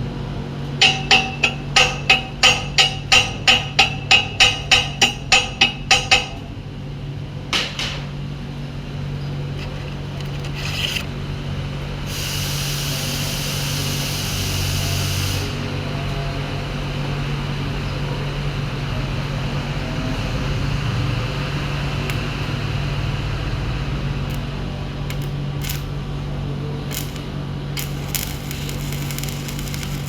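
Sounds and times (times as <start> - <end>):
constant low hum: 0.0 - 12.1, 15.6 - 30.0
hammer striking metal: 0.8 - 6.4
steady hiss: 12.1 - 15.6, 26.9 - 30.0.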